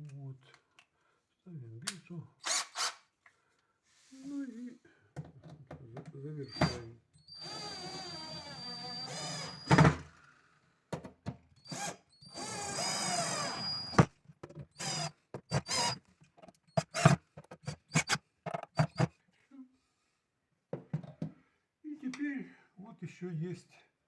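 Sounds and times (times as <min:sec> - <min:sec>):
cordless drill whining: 0:02.4 - 0:03.0, 0:06.4 - 0:09.9, 0:11.6 - 0:14.1, 0:14.7 - 0:16.0, 0:16.7 - 0:19.1.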